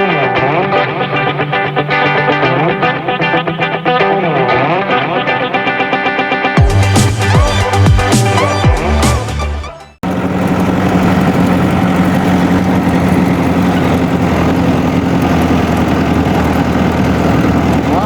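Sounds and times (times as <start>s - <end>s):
intro music: 0.0s - 12.1s
diesel engine running: 6.6s - 18.0s.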